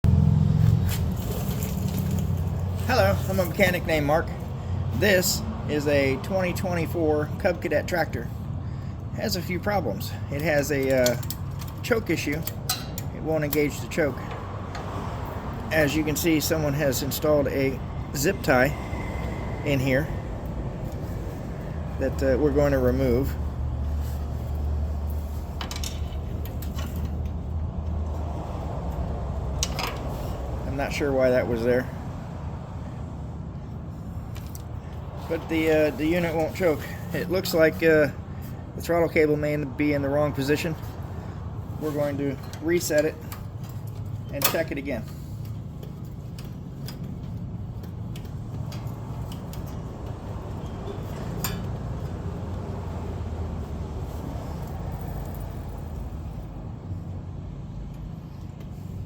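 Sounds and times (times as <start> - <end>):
light metallic clicks and taps: 45.4 - 52.2.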